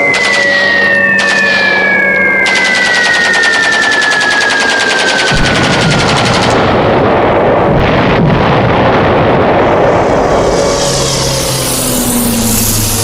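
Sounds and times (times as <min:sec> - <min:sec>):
machine-gun fire: 0:00.0 - 0:01.8, 0:02.5 - 0:10.0
high descending whistle: 0:00.0 - 0:06.6, 0:09.9 - 0:13.0
deep engine-like rumble: 0:05.4 - 0:13.0.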